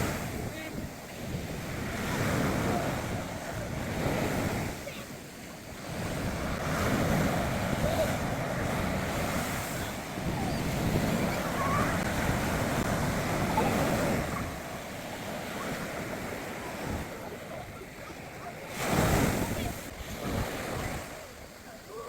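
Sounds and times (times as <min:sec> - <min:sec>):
wind on microphone: 0:00.0 - 0:21.6
surf breaking on beach: 0:00.0 - 0:22.0.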